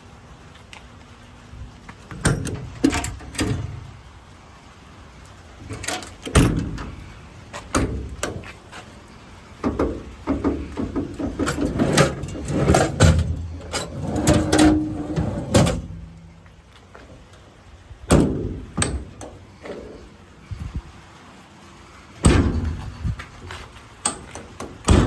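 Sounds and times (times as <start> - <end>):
metal doors clanking: 2.1 - 4.0, 5.6 - 8.5, 9.6 - 16.3, 18.1 - 20.0, 22.2 - 23.1, 24.0 - 25.0.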